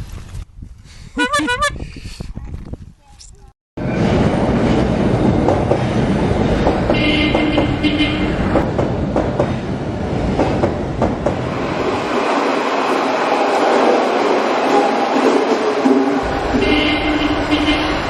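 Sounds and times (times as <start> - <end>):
train rumbling on rails: 3.8 - 18.0.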